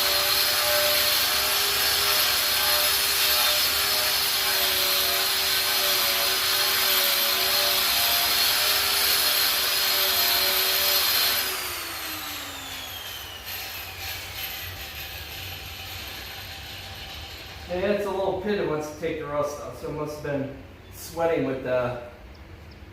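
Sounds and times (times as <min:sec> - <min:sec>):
angle grinder on steel: 0:00.0 - 0:18.0.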